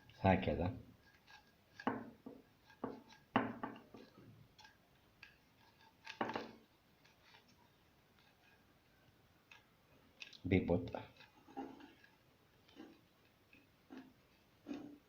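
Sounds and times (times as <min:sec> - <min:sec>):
desk lamp parts knocking and clicking: 0:01.8 - 0:04.1, 0:06.0 - 0:06.6.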